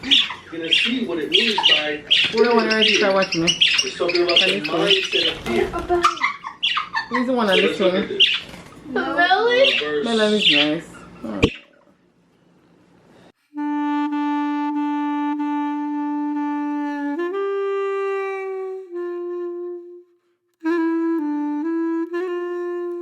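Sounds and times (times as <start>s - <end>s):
wind instrument slow melody: 13.4s - 23.0s.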